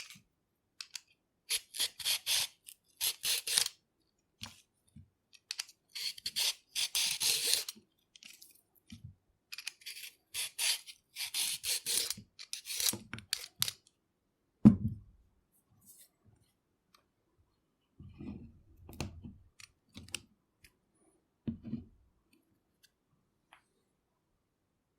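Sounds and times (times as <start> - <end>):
peeler scraping a carrot: 1.5 - 3.7, 5.9 - 7.8, 9.6 - 13.5.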